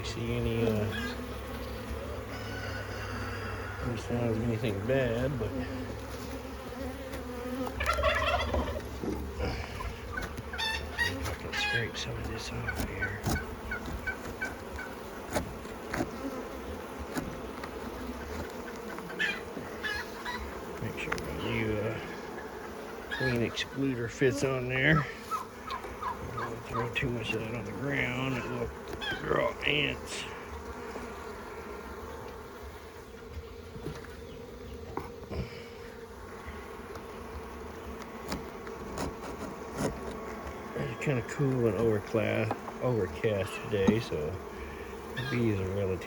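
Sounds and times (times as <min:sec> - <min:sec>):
honeybees buzzing: 0:00.0 - 0:46.0
scraping wax: 0:05.5 - 0:22.4, 0:36.4 - 0:45.6.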